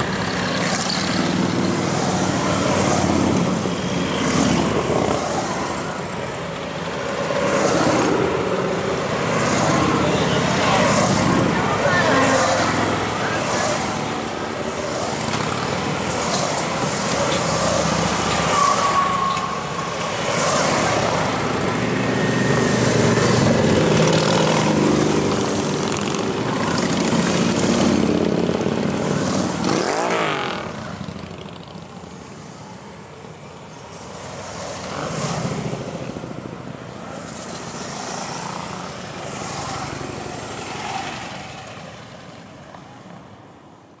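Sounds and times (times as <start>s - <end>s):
motorcycles riding past: 0.0s - 31.9s.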